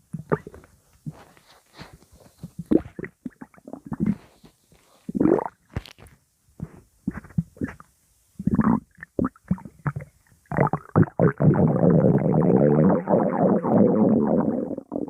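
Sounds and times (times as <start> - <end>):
stomach growling and gurgling: 0.1 - 1.2, 2.4 - 4.4, 5.0 - 6.0, 7.1 - 7.8, 8.4 - 15.0.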